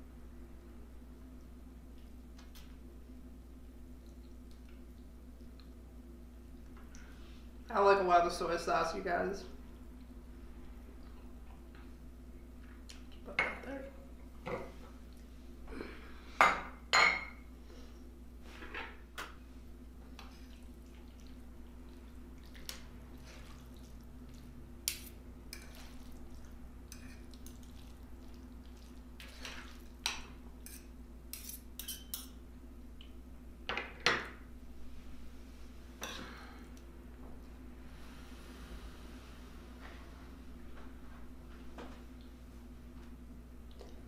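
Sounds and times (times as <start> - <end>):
faint low hum: 0.0 - 44.0
utensils clinking on a plate: 30.1 - 32.4.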